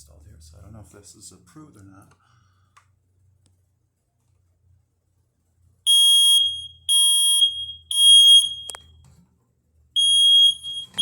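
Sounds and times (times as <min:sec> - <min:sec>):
smoke detector beeps: 0:05.9 - 0:09.0, 0:10.0 - 0:11.0.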